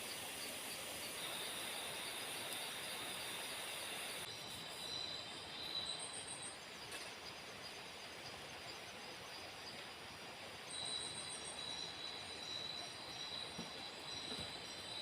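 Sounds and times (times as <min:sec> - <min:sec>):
insect high trill: 0:00.0 - 0:06.6
insect quick chirps: 0:00.0 - 0:15.0.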